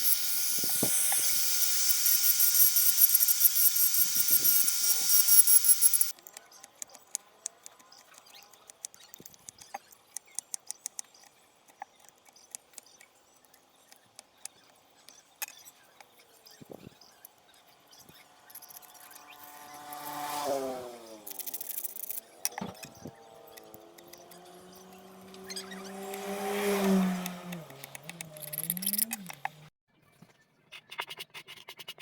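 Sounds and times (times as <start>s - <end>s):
vehicle engine passing by: 18.3s - 29.7s.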